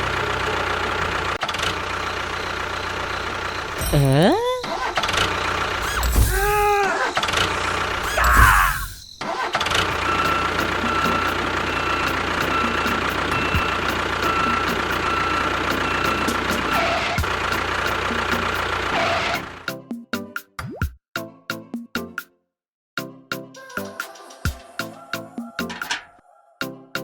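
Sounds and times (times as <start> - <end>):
vehicle engine running: 0.0 - 19.7.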